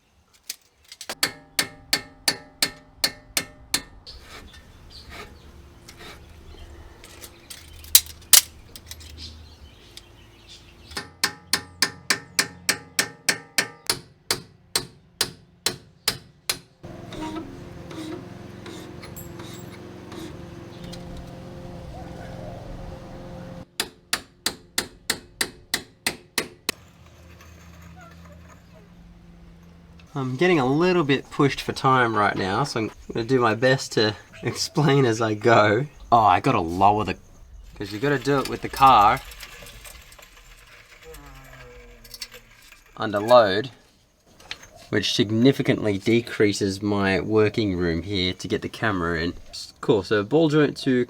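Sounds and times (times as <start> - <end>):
hammer striking metal: 1.2 - 4.1, 10.9 - 20.3, 23.8 - 26.8.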